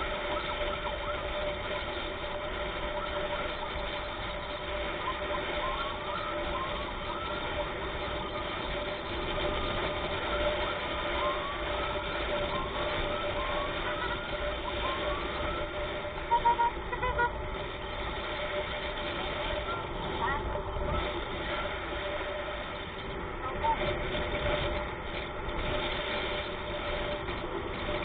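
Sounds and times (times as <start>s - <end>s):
emergency siren whooping: 0.0s - 28.0s
road and engine noise: 0.0s - 28.0s
loud horn beeps: 16.1s - 17.5s.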